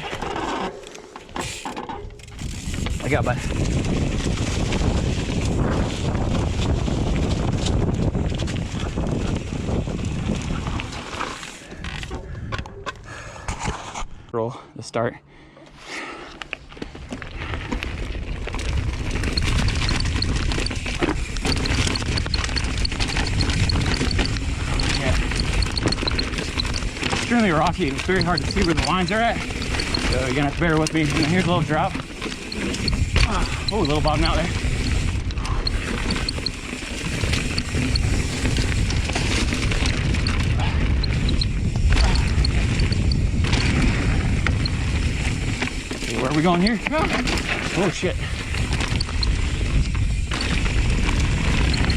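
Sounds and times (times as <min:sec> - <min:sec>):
bike rattling over rock: 0:00.0 - 0:12.5, 0:16.7 - 0:51.9
wind rumble on microphone: 0:02.1 - 0:12.7, 0:17.2 - 0:46.0, 0:46.9 - 0:51.9.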